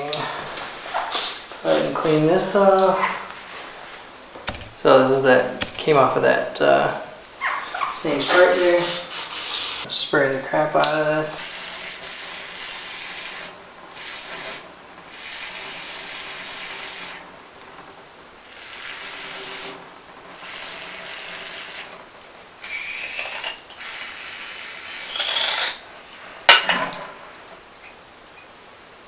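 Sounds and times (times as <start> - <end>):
sharp knock: 4.5 - 4.9, 5.6 - 6.0.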